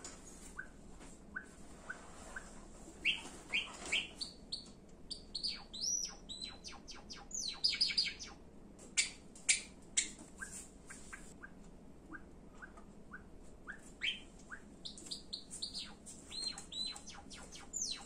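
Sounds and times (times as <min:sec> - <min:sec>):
bird singing chirps and whistles: 0:03.0 - 0:08.4, 0:11.4 - 0:18.0.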